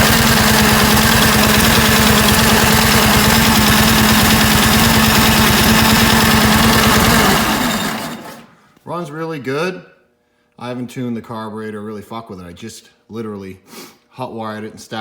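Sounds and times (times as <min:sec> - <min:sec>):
motorcycle engine running: 0:00.0 - 0:08.5
engine winding down: 0:00.0 - 0:08.6.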